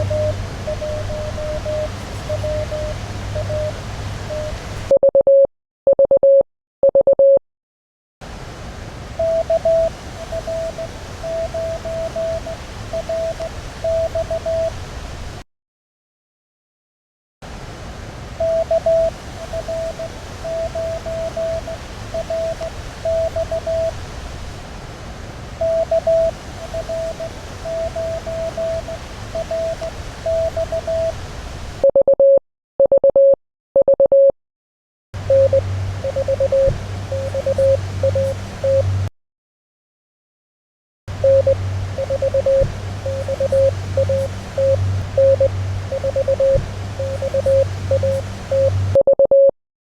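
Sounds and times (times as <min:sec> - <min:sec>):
low-pitched keyed radio signal: 0:00.0 - 0:04.6, 0:35.2 - 0:39.1, 0:41.1 - 0:49.0
low hum: 0:00.0 - 0:04.9, 0:35.2 - 0:39.1, 0:41.1 - 0:49.0
radio band hiss: 0:00.0 - 0:04.9, 0:25.6 - 0:31.2, 0:35.2 - 0:39.0, 0:41.1 - 0:48.9
morse code beeps: 0:00.0 - 0:07.4, 0:09.2 - 0:14.7, 0:18.4 - 0:23.9, 0:25.6 - 0:31.1, 0:31.8 - 0:34.3, 0:35.3 - 0:39.1, 0:41.2 - 0:49.5.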